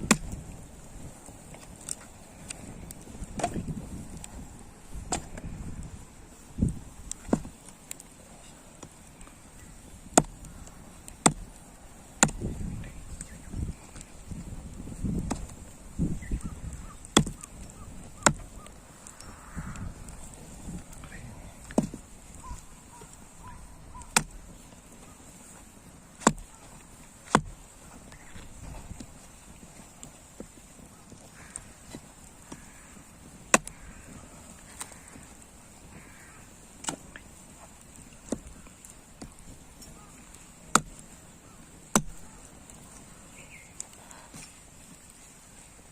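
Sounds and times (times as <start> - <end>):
dull low thuds: 0.0 - 1.1, 10.0 - 22.7
faint ticks: 16.3 - 24.2.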